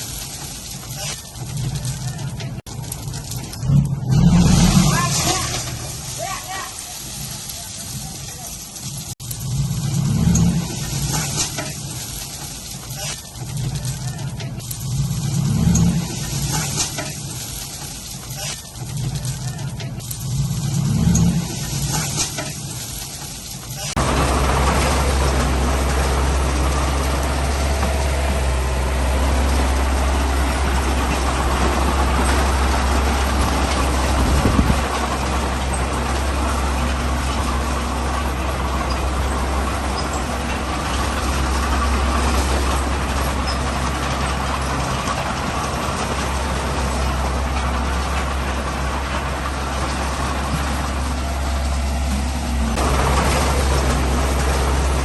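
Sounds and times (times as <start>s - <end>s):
heavy diesel engine droning: 1.8s - 7.4s, 9.2s - 12.0s, 13.8s - 17.4s, 23.8s - 55.0s.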